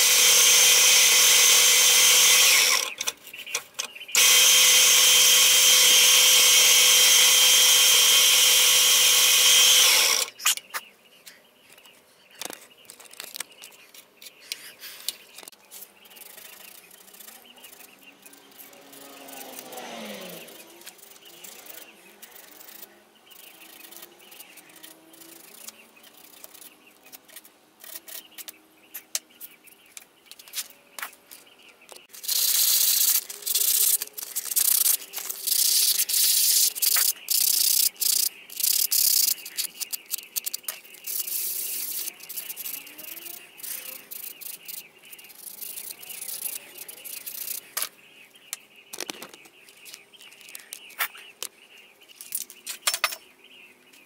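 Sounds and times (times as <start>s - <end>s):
scattered clicks: 31.9s - 47.9s
sandpaper rubbing wood: 32.1s - 39.8s.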